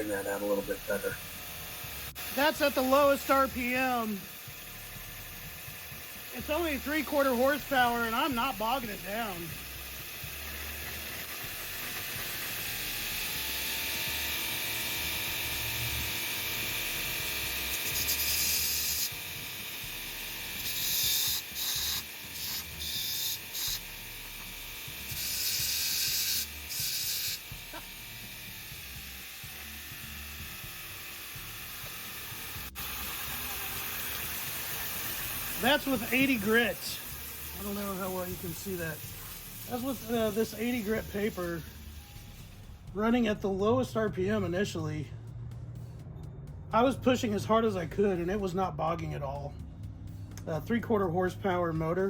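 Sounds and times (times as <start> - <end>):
steel grinding on belt: 0.0 - 42.7
grinder motor running hiss: 0.0 - 42.8.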